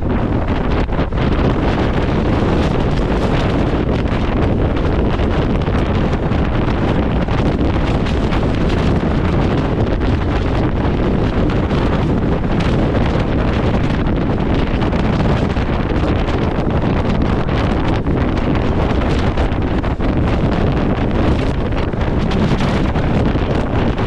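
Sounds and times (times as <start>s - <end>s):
strong wind buffeting microphone: 0.0s - 24.0s.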